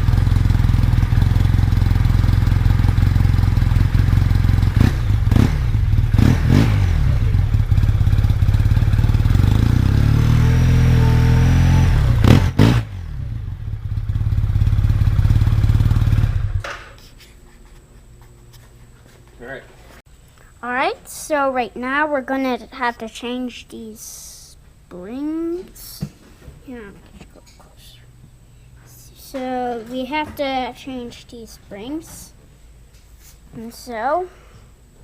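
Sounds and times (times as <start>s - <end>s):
utility vehicle engine idling and revving: 0.0s - 16.6s.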